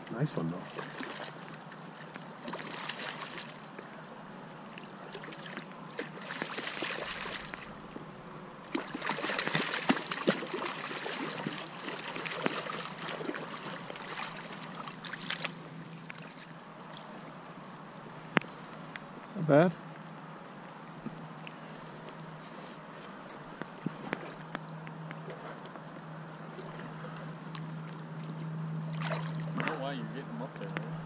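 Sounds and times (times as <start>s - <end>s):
river water splashing: 0.6s - 3.8s, 4.7s - 17.4s, 26.5s - 29.9s.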